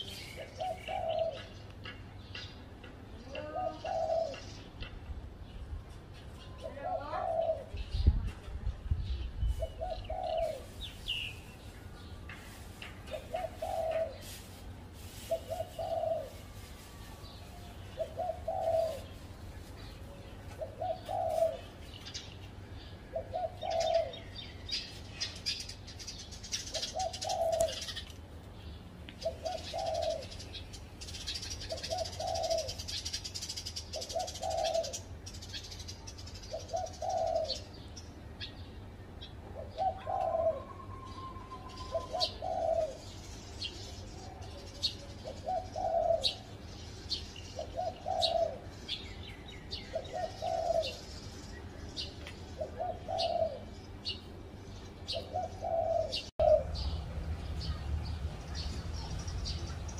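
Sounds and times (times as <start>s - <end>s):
small birds chirping: 0.0s - 59.9s
dove cooing: 0.2s - 2.0s, 3.2s - 4.6s, 6.6s - 7.9s, 9.5s - 11.0s, 13.1s - 16.6s, 17.7s - 21.9s, 23.1s - 24.9s, 26.6s - 28.0s, 29.2s - 30.5s, 31.1s - 35.7s, 36.4s - 37.9s, 39.6s - 43.2s, 44.3s - 46.6s, 47.6s - 48.9s, 49.7s - 51.2s, 52.5s - 54.2s, 55.1s - 57.0s.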